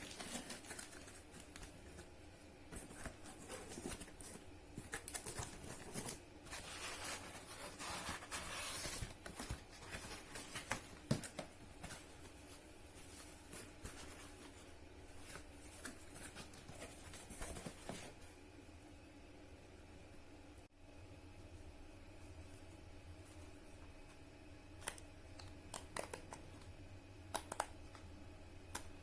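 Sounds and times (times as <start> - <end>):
packaging rustling: 0.0 - 2.1.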